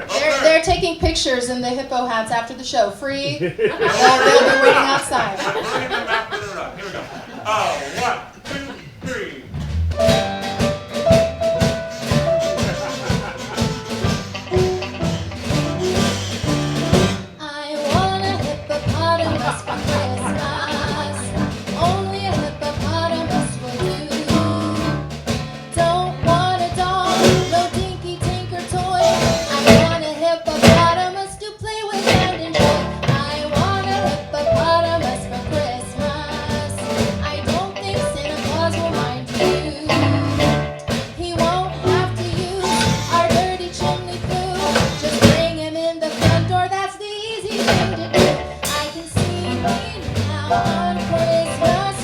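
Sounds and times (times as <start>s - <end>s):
drum kit: 3.4s - 6.4s, 8.0s - 52.0s
electric guitar: 10.0s - 17.4s, 18.0s - 30.0s, 32.1s - 45.6s, 47.6s - 52.0s
person singing: 17.4s - 25.0s, 25.8s - 40.6s, 41.2s - 52.0s.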